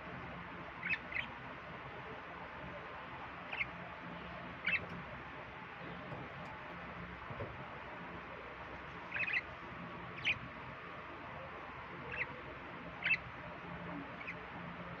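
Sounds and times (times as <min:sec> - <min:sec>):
budgerigar chirping: 0:00.8 - 0:01.4, 0:03.5 - 0:03.8, 0:04.6 - 0:04.9, 0:09.1 - 0:09.5, 0:10.2 - 0:10.4, 0:12.0 - 0:12.4, 0:13.0 - 0:13.4, 0:14.1 - 0:14.4.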